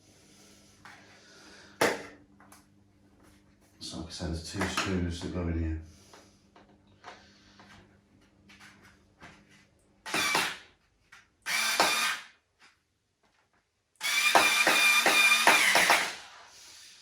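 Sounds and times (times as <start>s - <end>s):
electric screwdriver driving screws: 10.1s - 10.6s, 11.4s - 12.3s, 14.0s - 16.4s.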